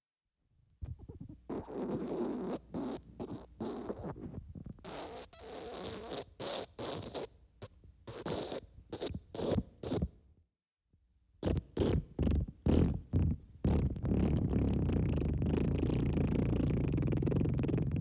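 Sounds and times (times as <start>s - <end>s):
wet fart sound effect: 11.4s - 18.0s.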